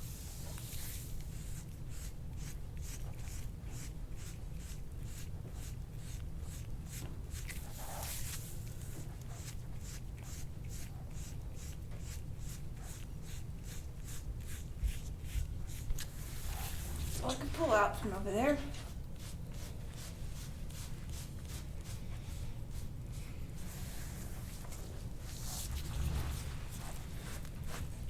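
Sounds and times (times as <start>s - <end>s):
tool scraping over skin: 0.0s - 17.8s
low hum: 23.3s - 27.8s.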